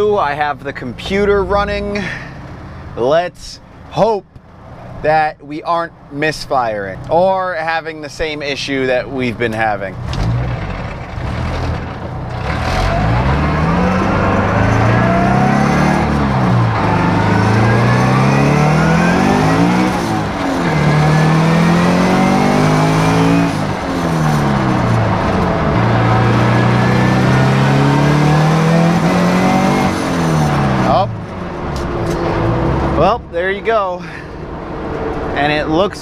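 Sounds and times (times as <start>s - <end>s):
car engine accelerating hard: 9.8s - 33.4s.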